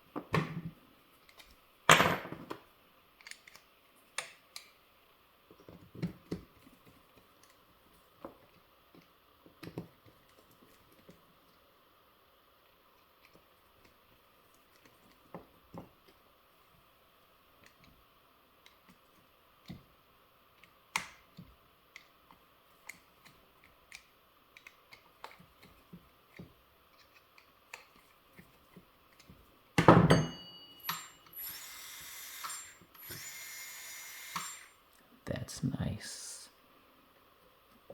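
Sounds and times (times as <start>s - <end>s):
metal and plastic parts clicking: 3.2s - 4.7s
small electric motor whining: 30.8s - 34.8s.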